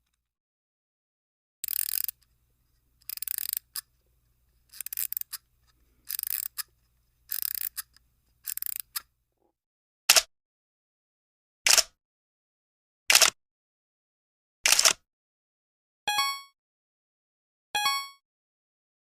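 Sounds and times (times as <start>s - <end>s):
sharp click: 11.7s - 12.0s, 13.1s - 13.4s, 14.6s - 15.0s.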